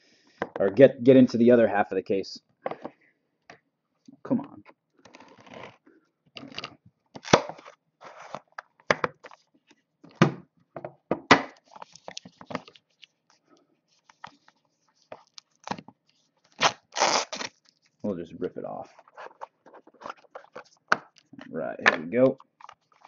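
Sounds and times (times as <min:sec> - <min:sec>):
plastic wrap and cardboard crinkling: 0:13.9 - 0:18.1.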